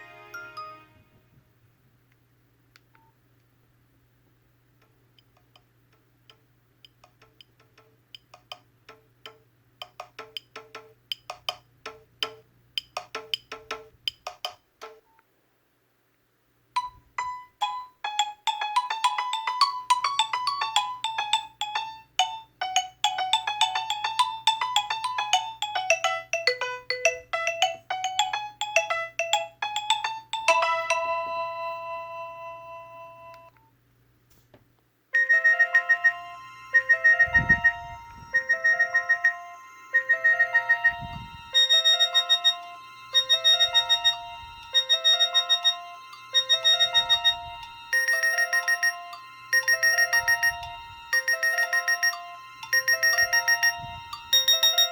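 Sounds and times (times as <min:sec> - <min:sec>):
phone ringtone melody: 0:00.0 - 0:00.9, 0:16.8 - 0:33.5, 0:35.2 - 0:54.9.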